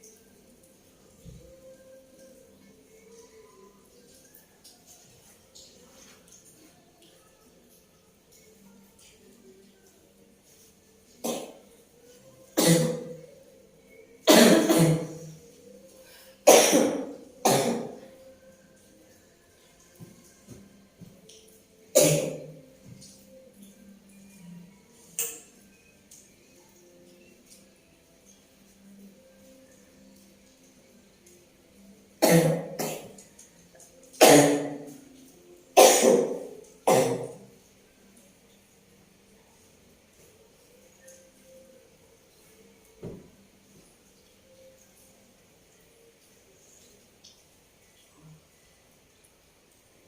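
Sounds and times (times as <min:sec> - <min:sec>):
woman coughing: 0:14.3 - 0:15.2.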